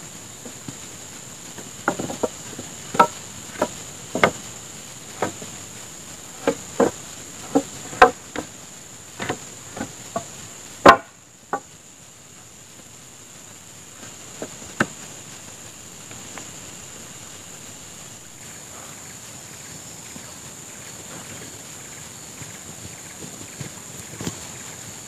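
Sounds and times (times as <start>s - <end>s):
high insect drone: 0.0s - 25.0s
blade chopping wood: 1.6s - 4.5s, 6.4s - 8.5s, 9.2s - 11.7s.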